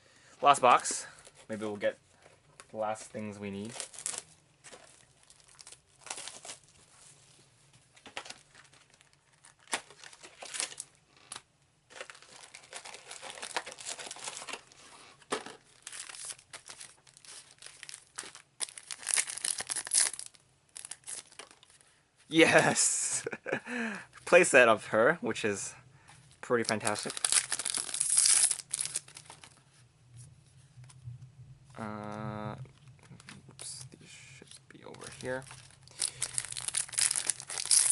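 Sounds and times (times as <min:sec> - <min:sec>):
packaging tearing and crinkling: 0:03.6 - 0:06.7, 0:08.1 - 0:21.7, 0:26.6 - 0:29.6, 0:34.9 - 0:37.9.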